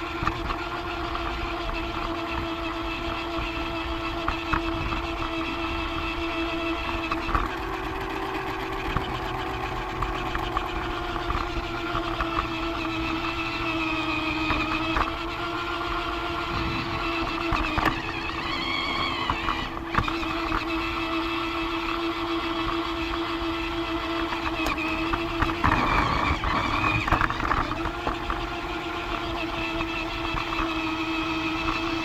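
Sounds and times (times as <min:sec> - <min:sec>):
toy train motor whine: 0:07.9 - 0:15.1, 0:24.6 - 0:32.0
fountain water hiss: 0:09.0 - 0:15.1, 0:24.8 - 0:32.0
high rising and falling tone: 0:24.8 - 0:32.0.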